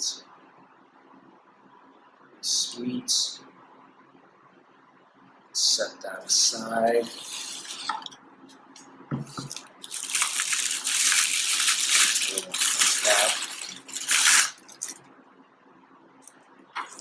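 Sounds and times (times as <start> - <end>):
plastic and cardboard rustling: 9.2 - 15.0, 16.8 - 17.0.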